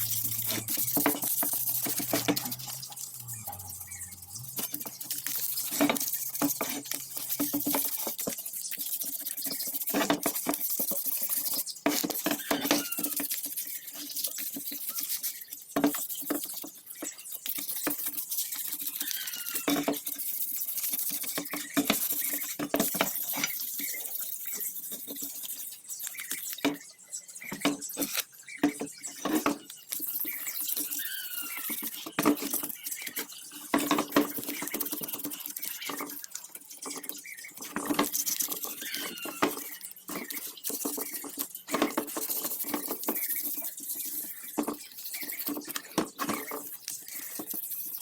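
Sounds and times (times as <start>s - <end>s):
sandpaper rasping on metal: 0.0s - 26.6s, 37.6s - 48.0s.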